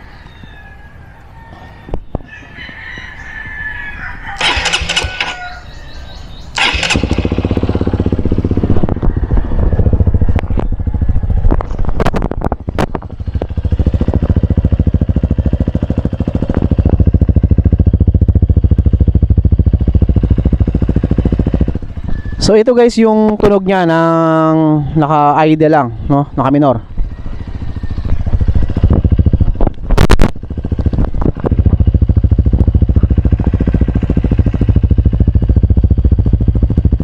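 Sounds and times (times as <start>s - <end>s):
rooster crowing: 0.0s - 11.4s, 21.8s - 22.7s, 26.8s - 29.0s
motorcycle engine idling: 0.0s - 37.0s.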